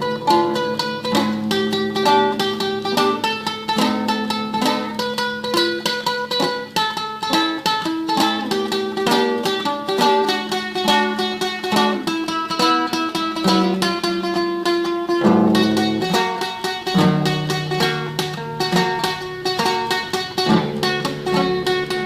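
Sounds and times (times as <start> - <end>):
classical guitar tremolo: 0.0 - 22.0.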